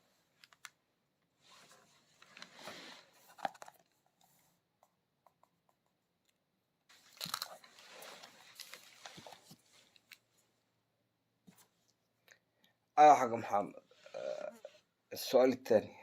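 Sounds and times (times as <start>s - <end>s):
crunching crinkling handling noise: 1.4s - 4.4s, 6.9s - 10.5s.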